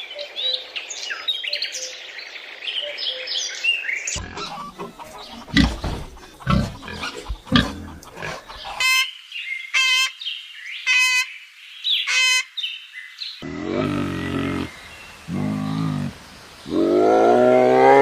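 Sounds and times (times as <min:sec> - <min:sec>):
low rough animal grunts: 0:04.2 - 0:08.8.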